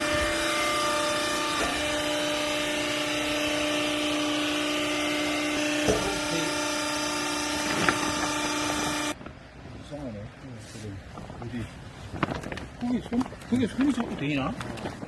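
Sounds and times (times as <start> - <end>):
hydraulic pump humming: 0.0 - 9.2.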